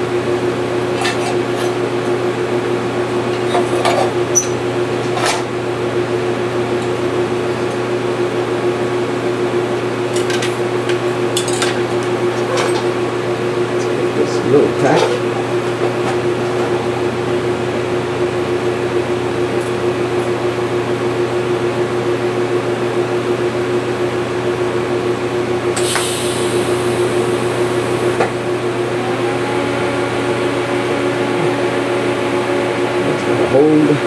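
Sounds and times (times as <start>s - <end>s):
welding machine humming: 25.6s - 34.0s
high hiss of tack weld: 25.8s - 28.2s.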